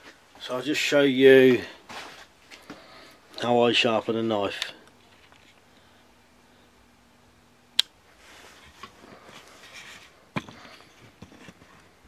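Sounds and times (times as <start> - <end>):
faint steady hum: 0.0 - 12.0
soft rustling: 1.5 - 3.5, 8.1 - 12.0.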